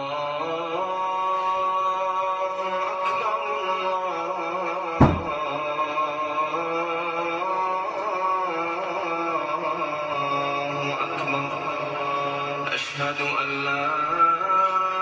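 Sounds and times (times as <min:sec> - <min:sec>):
melodic chant with held notes: 0:00.0 - 0:15.0
loud thump: 0:05.0 - 0:05.4.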